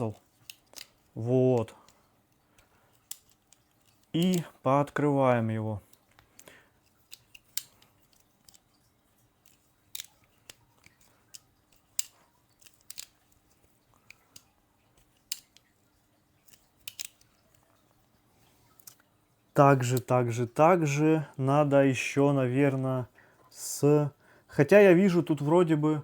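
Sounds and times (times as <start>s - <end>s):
multitool clicking open and shut: 0.1s - 2.0s, 2.6s - 4.6s, 5.9s - 8.7s, 9.4s - 15.7s, 16.5s - 17.6s.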